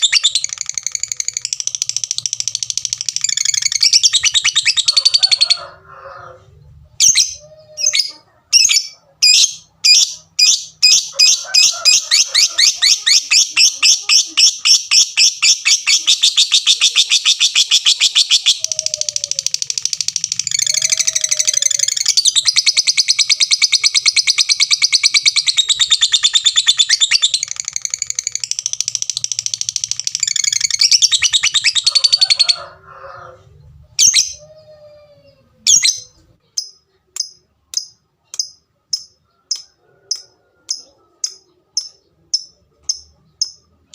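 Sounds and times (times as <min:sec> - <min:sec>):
lovebird ticking calls: 0:00.0 - 0:05.2, 0:12.1 - 0:32.3, 0:36.6 - 0:43.7
lovebird shrill chattering: 0:00.0 - 0:05.6, 0:07.0 - 0:32.7.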